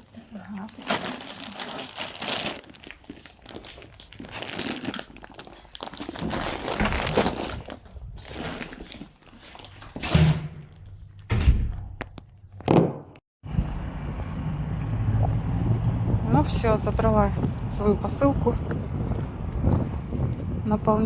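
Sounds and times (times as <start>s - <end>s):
packaging rustling and crinkling: 0.3s - 10.0s.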